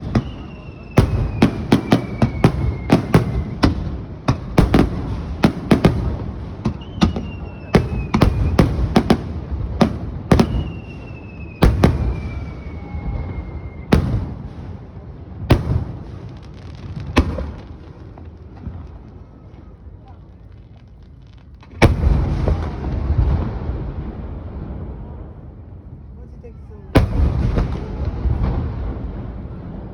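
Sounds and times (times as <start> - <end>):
falling firework whistle: 0.0 - 3.7, 6.6 - 9.2, 10.0 - 14.5
fireworks bursting with bangs: 0.0 - 25.5, 27.0 - 29.9.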